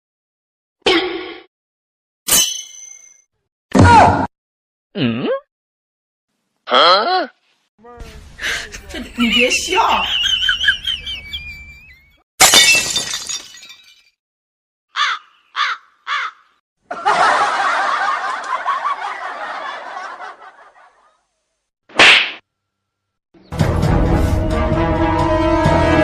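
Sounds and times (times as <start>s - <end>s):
glass breaking crash: 12.4s - 14.2s
crow caws: 14.9s - 16.6s.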